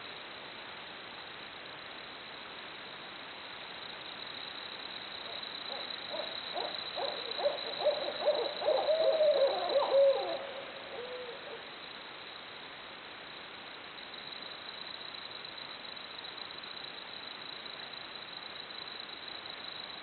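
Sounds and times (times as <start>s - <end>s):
steady hiss: 0.0s - 20.0s
owls hooting: 5.7s - 11.7s.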